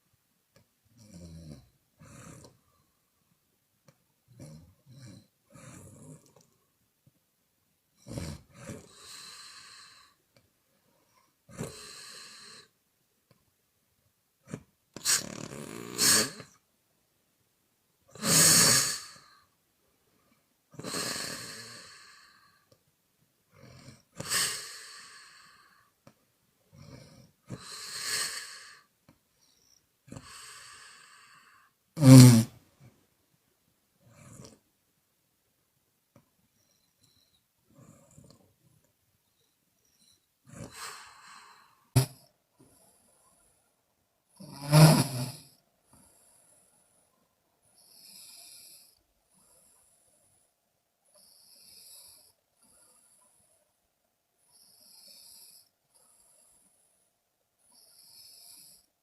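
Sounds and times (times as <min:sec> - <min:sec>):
woman snoring: 0:01.0 - 0:02.6, 0:04.4 - 0:06.5, 0:08.0 - 0:10.2, 0:11.5 - 0:12.7, 0:14.5 - 0:16.6, 0:18.1 - 0:19.5, 0:20.8 - 0:22.7, 0:23.6 - 0:25.9, 0:26.8 - 0:28.9, 0:29.6 - 0:32.6, 0:40.5 - 0:42.2, 0:44.4 - 0:45.6.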